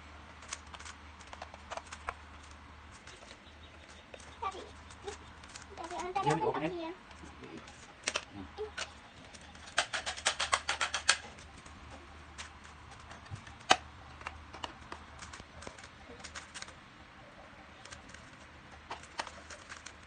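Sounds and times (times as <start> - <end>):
plastic puzzle cube clicking: 0.4 - 4.3, 8.0 - 11.2, 12.4 - 16.8, 17.8 - 20.0.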